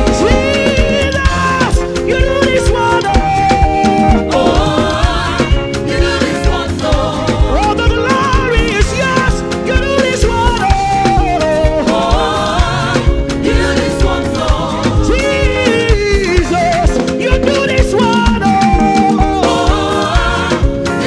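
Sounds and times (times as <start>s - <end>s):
steady drum beat: 0.0s - 21.0s
sustained keyboard chords: 0.0s - 21.0s.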